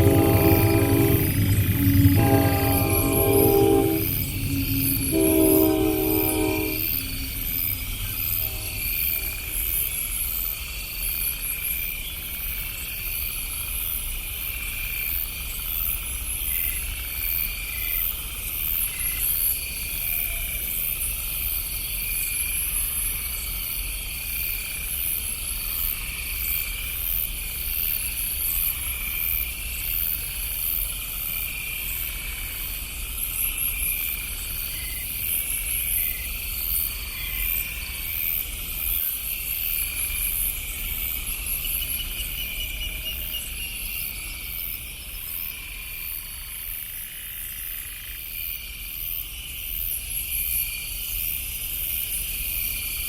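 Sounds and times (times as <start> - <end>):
low steady rumble: 0.0 - 9.6
night insects chirping: 0.0 - 53.0.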